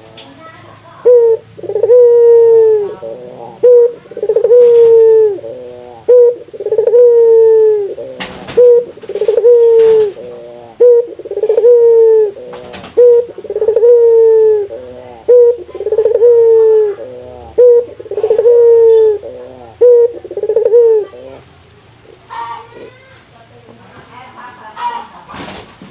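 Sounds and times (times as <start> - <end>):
dove cooing: 0.0 - 23.0.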